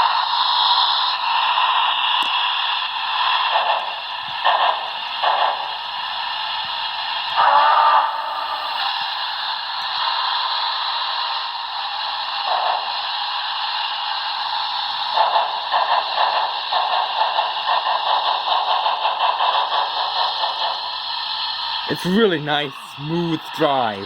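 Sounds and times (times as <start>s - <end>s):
steam hiss through small speaker: 0.0s - 24.0s
rapid rhythmic chuffing: 15.0s - 24.0s.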